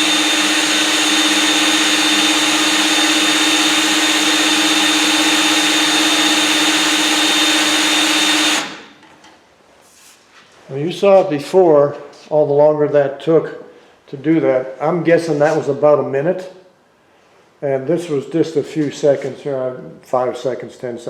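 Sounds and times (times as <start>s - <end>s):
power drill running: 0.0s - 9.0s.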